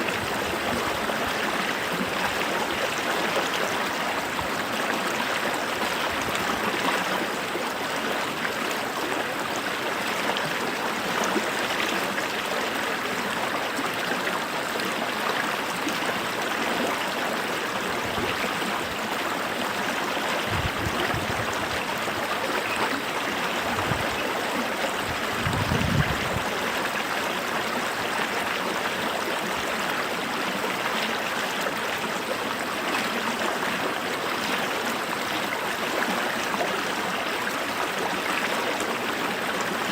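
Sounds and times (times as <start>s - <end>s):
creek water babbling: 0.0s - 39.9s.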